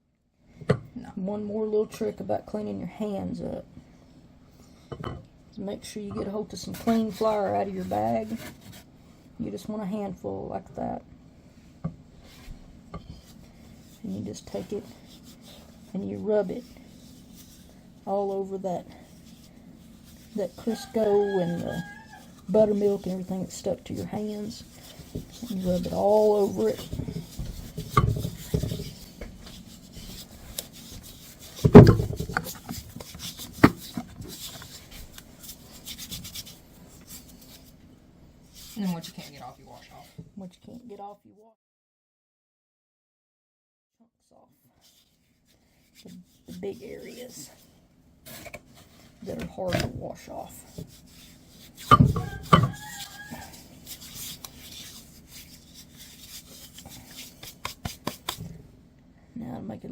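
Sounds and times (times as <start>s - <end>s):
hands rubbing with flour: 6.3s - 8.9s, 12.2s - 37.8s, 38.4s - 40.5s, 44.8s - 58.7s.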